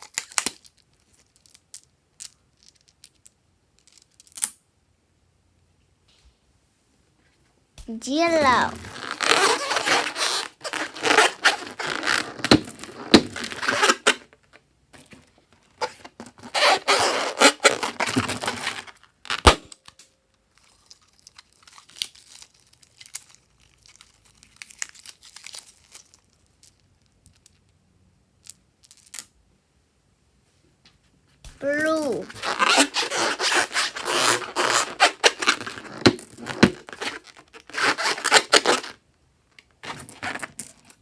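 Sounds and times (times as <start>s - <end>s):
slime crackling and crinkling: 20.6s - 26.6s.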